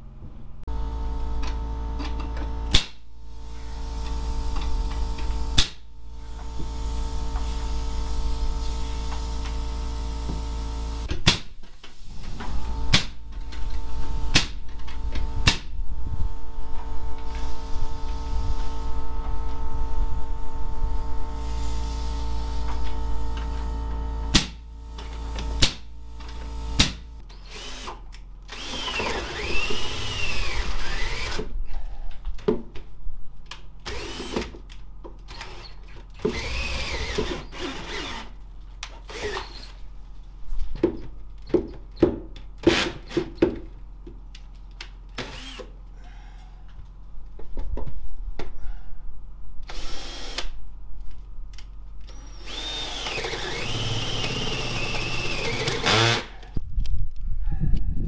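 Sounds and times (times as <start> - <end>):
power tool running: 0.7 - 11.1, 12.3 - 31.5, 33.9 - 34.5, 35.3 - 38.4, 39.1 - 39.7, 45.2 - 45.7, 49.7 - 50.5, 52.0 - 56.5.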